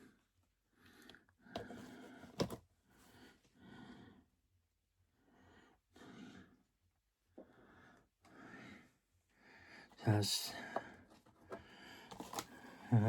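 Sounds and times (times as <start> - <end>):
soft breaths: 5.1 - 13.0.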